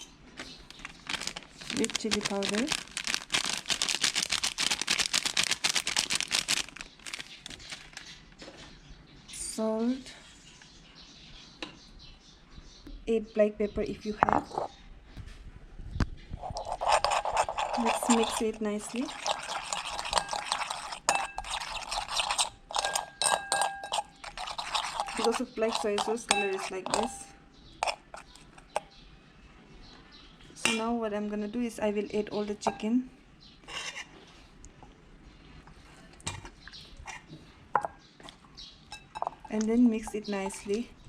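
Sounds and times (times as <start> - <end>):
plastic packet crinkling: 0.4 - 8.2
spoon stirring in a bowl: 16.3 - 28.9, 36.3 - 40.9
spoon clinking against bowl: 19.1 - 28.3, 38.9 - 40.7.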